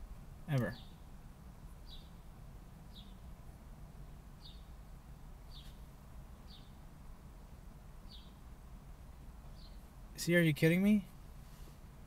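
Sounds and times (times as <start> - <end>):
bird chirping: 0.5 - 1.0, 1.8 - 3.3, 4.4 - 4.8, 5.5 - 5.8, 6.4 - 6.8, 8.0 - 8.5, 9.5 - 10.3.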